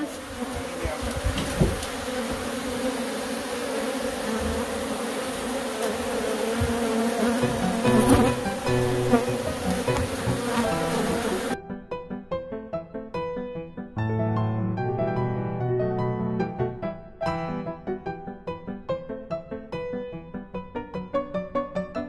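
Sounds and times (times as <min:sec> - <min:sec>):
bees buzzing: 0:00.0 - 0:11.6
piano music: 0:07.3 - 0:22.0.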